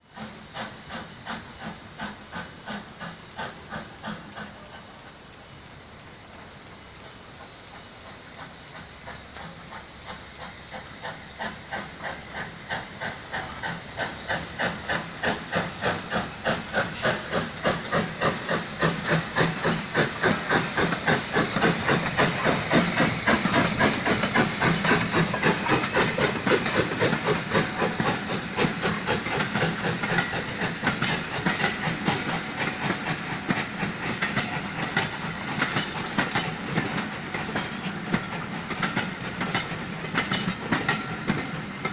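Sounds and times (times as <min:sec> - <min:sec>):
steam hissing: 0:00.0 - 0:41.9
steam locomotive chuffing: 0:00.0 - 0:41.9.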